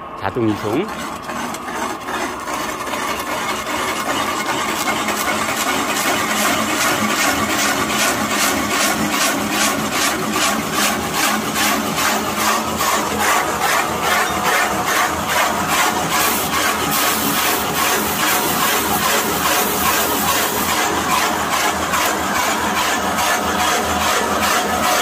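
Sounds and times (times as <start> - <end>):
lathe cutter scraping wood: 0.3 - 25.0.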